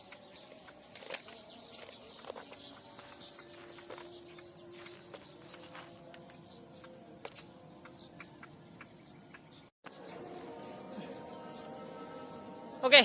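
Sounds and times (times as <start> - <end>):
insects calling: 0.0 - 10.1
small birds chirping: 0.0 - 13.0.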